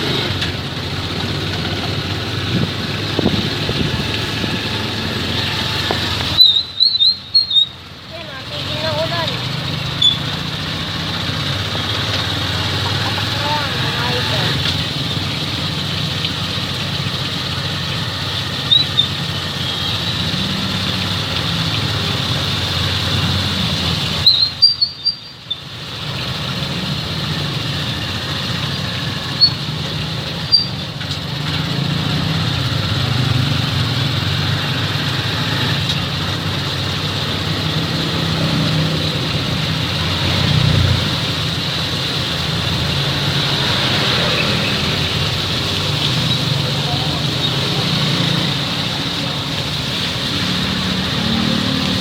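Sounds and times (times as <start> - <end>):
vehicle engine running: 0.0 - 52.0.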